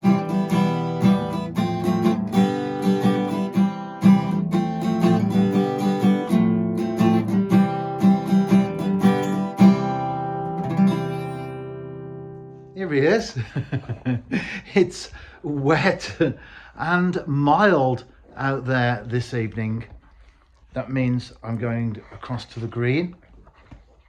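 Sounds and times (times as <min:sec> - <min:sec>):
acoustic guitar plucked notes: 0:00.0 - 0:12.8.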